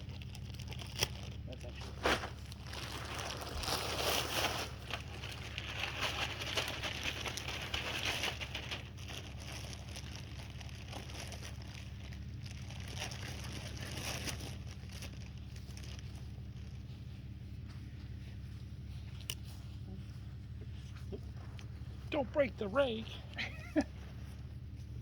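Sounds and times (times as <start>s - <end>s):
rake scraping through soil: 1.8s - 9.9s.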